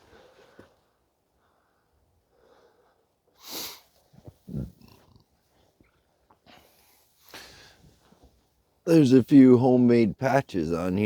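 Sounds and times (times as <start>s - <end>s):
sharp nasal breath: 3.4s - 3.9s.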